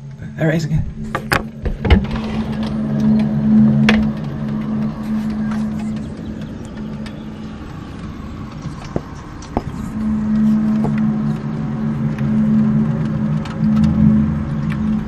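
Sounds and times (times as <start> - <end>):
low droning hum in sky: 0.0 - 15.0.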